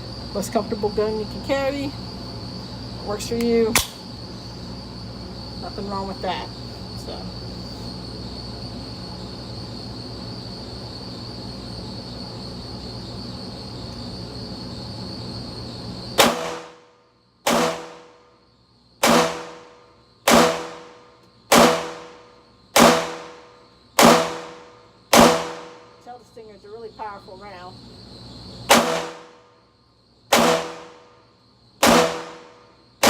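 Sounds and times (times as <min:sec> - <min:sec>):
pistol shots: 0:16.2 - 0:16.8, 0:17.5 - 0:18.1, 0:19.0 - 0:22.2, 0:22.8 - 0:23.4, 0:24.0 - 0:25.8, 0:28.7 - 0:29.4, 0:30.3 - 0:31.0, 0:31.8 - 0:32.6.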